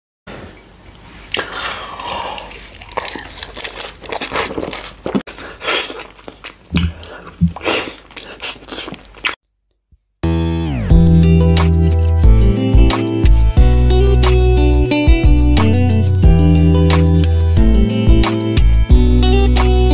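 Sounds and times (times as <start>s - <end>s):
crunchy chewing of food: 1.3s - 9.4s
music: 10.2s - 19.9s.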